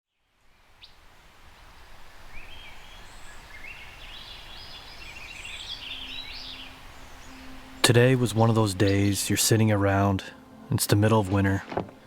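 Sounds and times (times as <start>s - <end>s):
small birds chirping: 0.4s - 9.6s.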